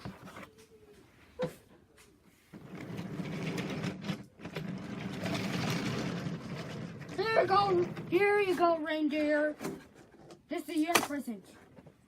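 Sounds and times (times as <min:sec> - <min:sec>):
toy train rattling on wooden track: 0:02.6 - 0:09.4.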